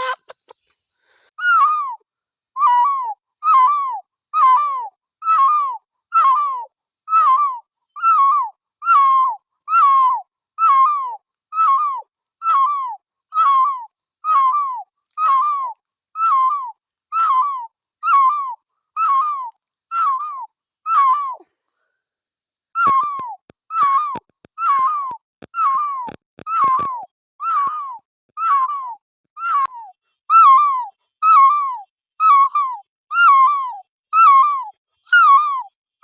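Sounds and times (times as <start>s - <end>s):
person imitating animal call: 0.0s - 0.4s.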